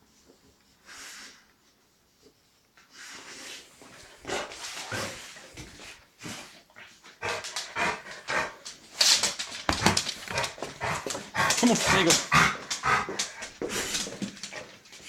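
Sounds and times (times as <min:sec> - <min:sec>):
dog making breathy sounds: 0:03.8 - 0:15.0.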